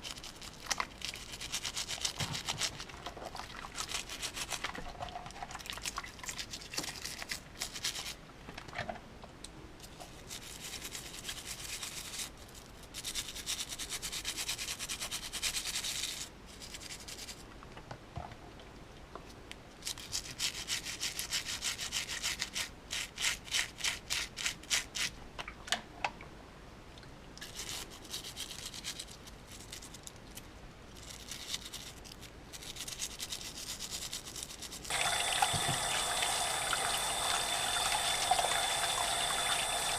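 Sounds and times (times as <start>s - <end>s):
toothbrush scrubbing plastic: 0.0s - 8.2s, 9.9s - 17.4s, 19.8s - 25.1s, 27.4s - 39.9s.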